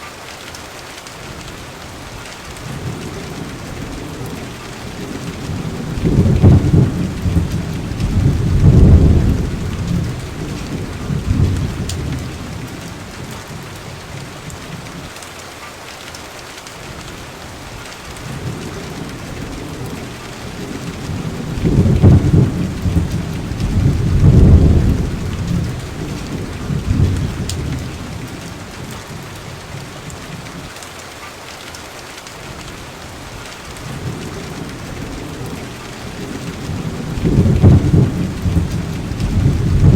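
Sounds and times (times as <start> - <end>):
steady rain: 0.0 - 39.9
thunder rolling: 2.7 - 13.3, 18.2 - 29.2, 33.8 - 39.9.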